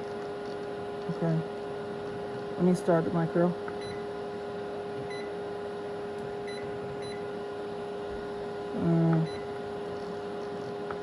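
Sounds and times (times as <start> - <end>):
microwave hum: 0.0 - 11.0
microwave keypad beeps: 3.8 - 4.0, 5.1 - 5.3, 6.5 - 7.3.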